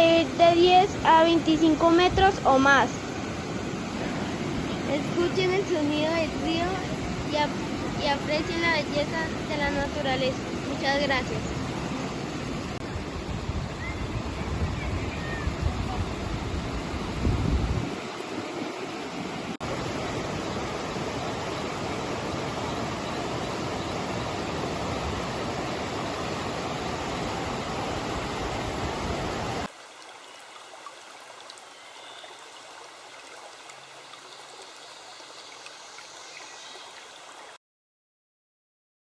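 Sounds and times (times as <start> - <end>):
river water rushing over rocks: 17.9 - 37.6.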